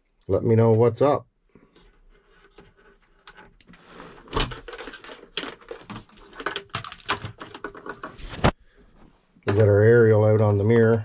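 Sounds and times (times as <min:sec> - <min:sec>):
clicking and rustling of handling: 0:01.7 - 0:08.6.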